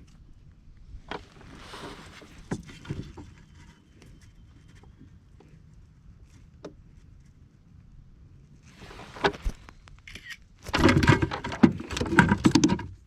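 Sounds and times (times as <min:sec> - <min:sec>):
rattling and knocking: 0:10.7 - 0:13.0.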